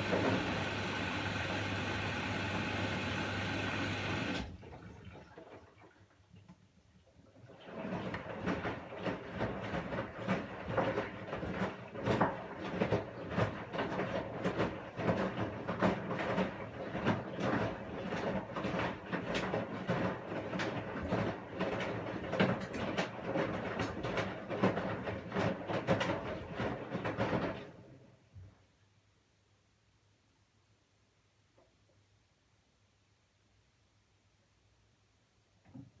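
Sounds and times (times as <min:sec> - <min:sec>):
washing machine drum churning: 0:00.0 - 0:06.1, 0:07.4 - 0:28.0.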